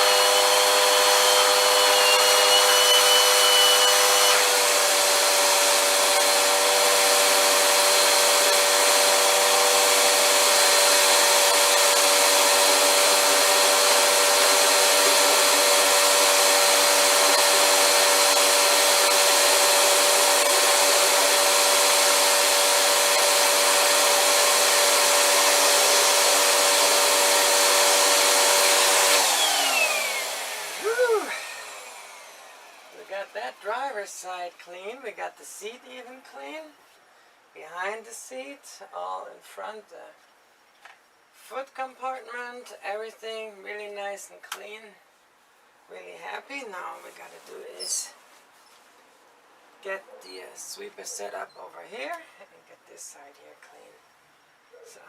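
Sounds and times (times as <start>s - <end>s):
vacuum motor winding down: 0.0s - 33.0s
vacuum cleaner running: 0.0s - 33.3s.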